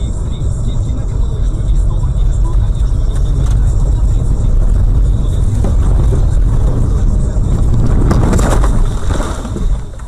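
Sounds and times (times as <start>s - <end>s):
car road rumble from inside: 0.0s - 10.0s
sharp crackling noises: 2.5s - 10.0s.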